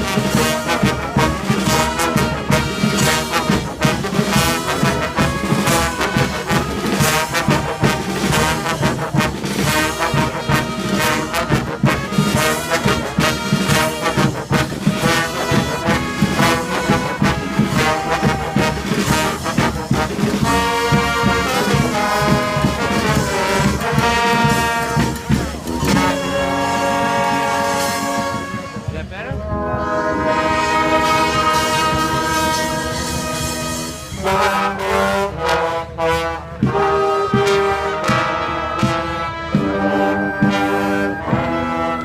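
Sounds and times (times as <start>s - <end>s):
percussion beat: 0.0s - 29.9s
brass band playing: 0.0s - 42.0s.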